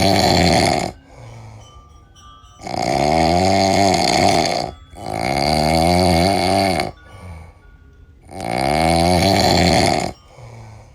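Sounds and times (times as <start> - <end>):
calf snoring: 0.0 - 1.0, 2.6 - 7.0, 8.2 - 10.2.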